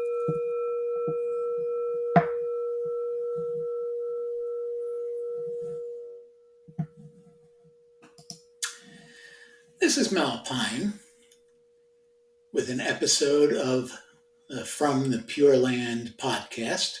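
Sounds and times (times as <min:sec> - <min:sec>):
singing bowl ringing: 0:00.0 - 0:06.9.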